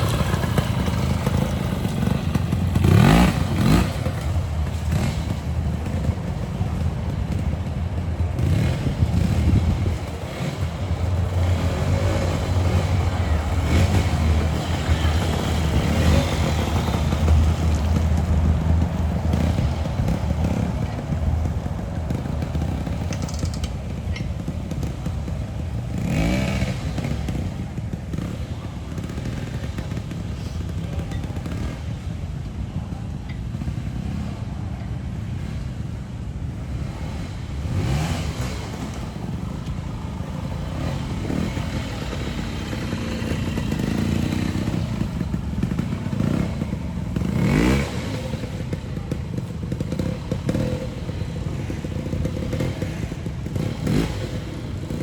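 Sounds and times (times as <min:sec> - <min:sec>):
motorcycle revving past: 0:00.0 - 0:07.4, 0:08.3 - 0:30.3, 0:36.6 - 0:55.0
motorcycle engines running: 0:00.0 - 0:55.0.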